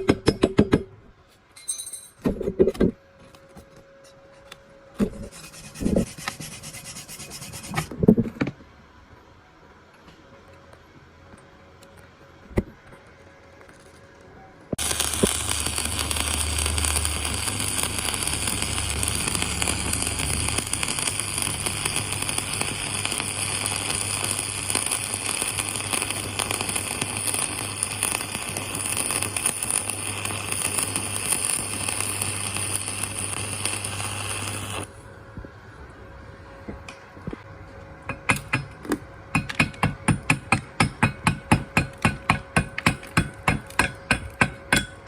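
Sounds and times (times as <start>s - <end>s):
welding arc crackling: 14.8s - 34.9s.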